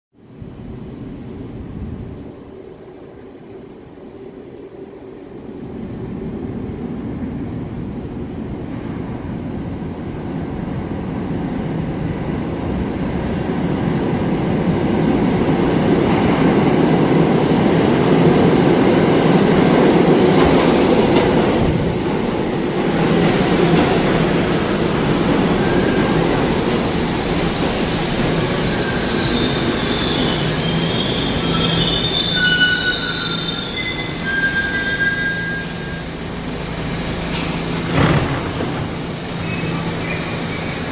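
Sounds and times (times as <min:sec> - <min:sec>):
subway train rumbling: 0:00.2 - 0:40.9
high-pitched wheel squeals: 0:25.6 - 0:36.1.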